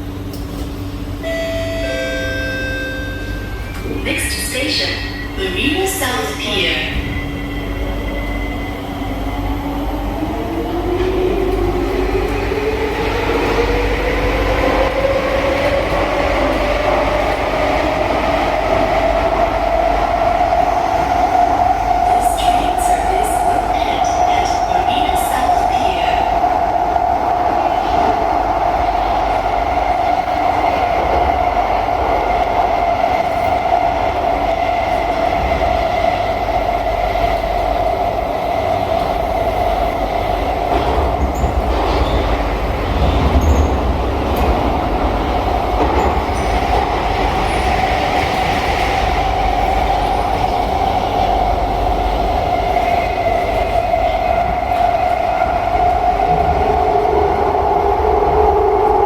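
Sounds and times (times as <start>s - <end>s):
train wheels rumbling on rails: 0.0s - 1.3s, 3.4s - 59.0s.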